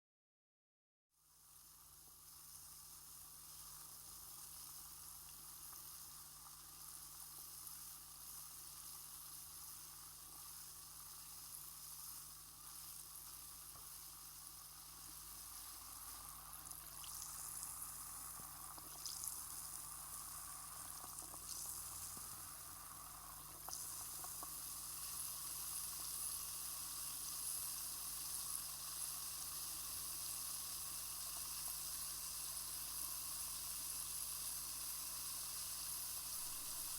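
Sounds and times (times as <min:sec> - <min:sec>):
tablet fizzing in water: 0:36.3 - 0:36.9.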